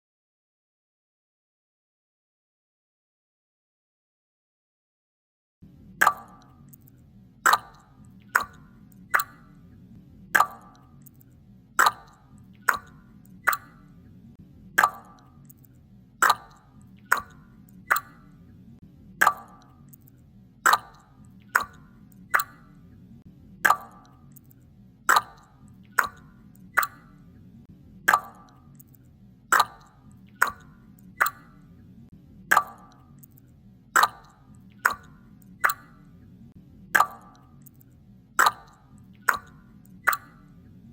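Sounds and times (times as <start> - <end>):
water drops plopping: 6.0 - 9.6, 10.4 - 14.0, 14.8 - 18.4, 19.2 - 22.8, 23.6 - 27.2, 28.1 - 31.7, 32.5 - 36.2, 37.0 - 40.6.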